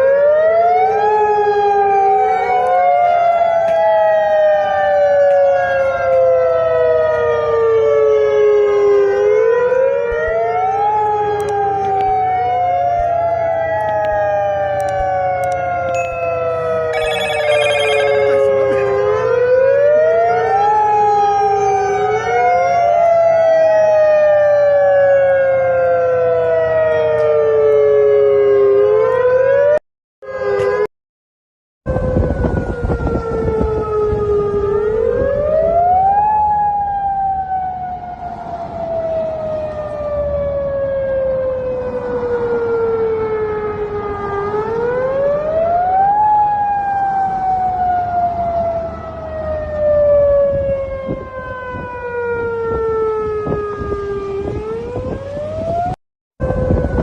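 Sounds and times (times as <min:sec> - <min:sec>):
emergency warning siren wailing: 0:00.0 - 0:30.9, 0:31.9 - 0:57.0
brief high trilling: 0:17.0 - 0:18.5.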